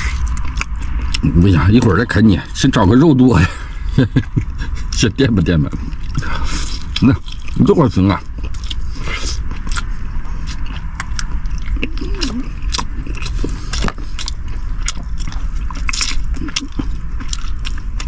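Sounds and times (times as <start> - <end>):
teeth crunching on bone: 0.0 - 1.6, 5.7 - 18.0
man chewing meat off bones: 0.0 - 2.0, 3.7 - 18.0.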